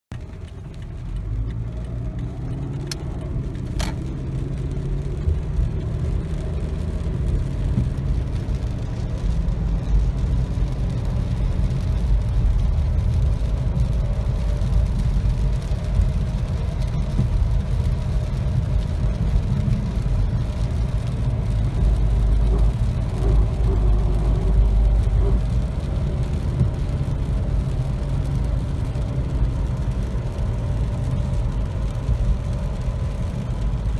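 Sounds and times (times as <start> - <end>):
faint clicks: 0.1 - 4.1
car engine rumble with grinding drone: 0.1 - 33.9.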